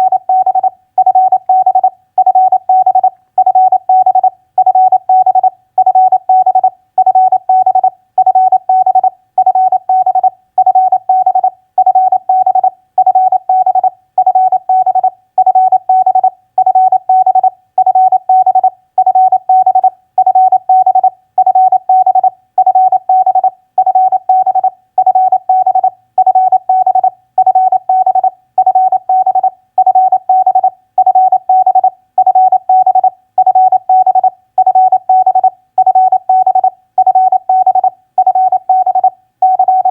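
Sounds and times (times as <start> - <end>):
morse code tone: 9.5 - 39.9.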